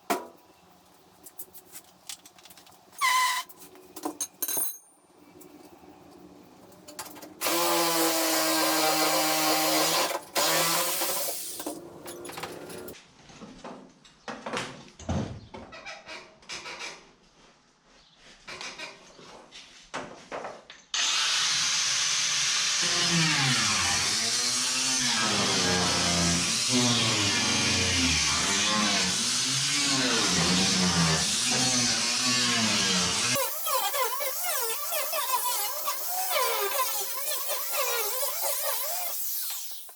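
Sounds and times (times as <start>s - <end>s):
power drill running: 7.4s - 11.6s, 21.0s - 39.9s.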